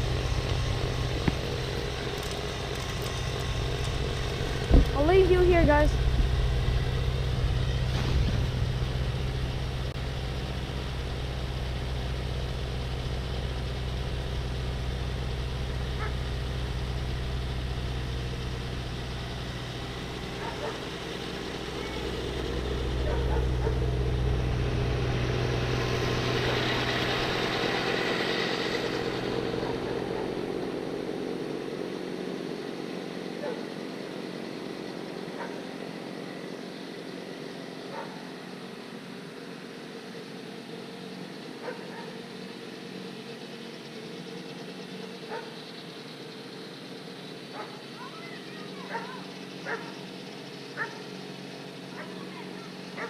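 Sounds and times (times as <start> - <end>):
snowblower engine running: 0.0 - 53.0.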